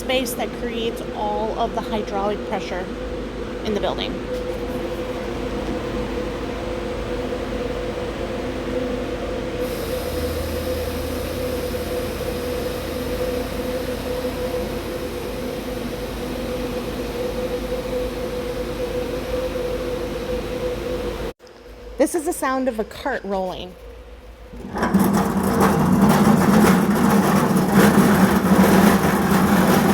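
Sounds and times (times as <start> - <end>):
hydraulic pump humming and whining: 0.0 - 21.3, 24.4 - 29.9
deep hum: 24.3 - 29.9.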